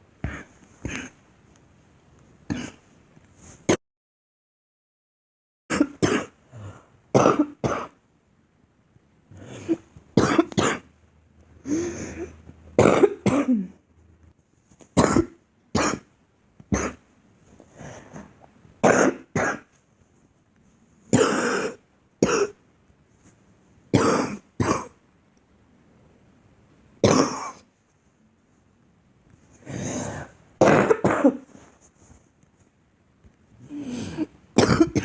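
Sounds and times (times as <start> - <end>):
girl coughing: 5.7 - 6.4, 7.2 - 8.0, 9.5 - 10.9, 12.1 - 13.8, 15.0 - 16.1, 16.8 - 17.0, 18.8 - 19.7, 21.1 - 22.6, 24.0 - 25.0, 27.0 - 27.6, 30.6 - 31.5, 33.8 - 35.0.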